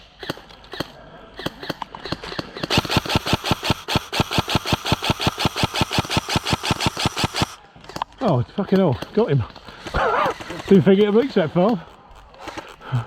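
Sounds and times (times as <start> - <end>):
airsoft gun firing: 0.2 - 7.6.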